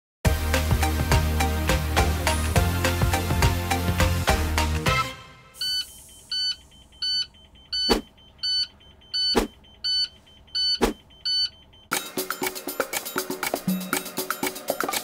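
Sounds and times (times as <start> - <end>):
electronic alarm beeping: 5.6 - 15.0.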